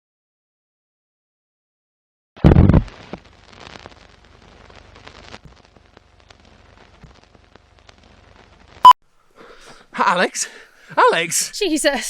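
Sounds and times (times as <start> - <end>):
steady crackling: 2.4 - 8.9.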